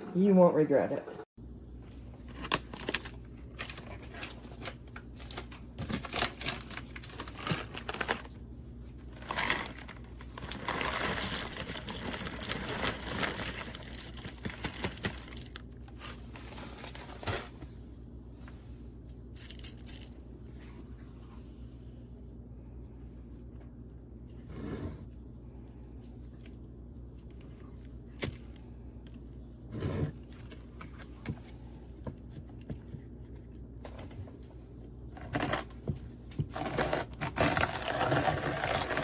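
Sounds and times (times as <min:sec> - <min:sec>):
coffee grinder crushing beans: 0:09.1 - 0:15.6, 0:36.4 - 0:39.0.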